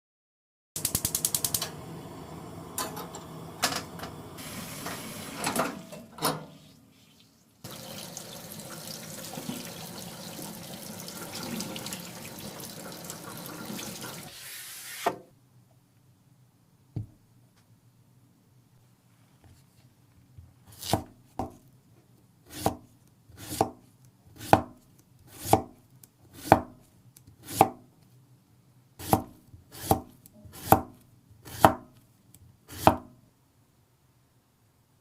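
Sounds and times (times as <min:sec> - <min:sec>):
water running from a tap: 0:04.4 - 0:05.5, 0:07.6 - 0:14.4.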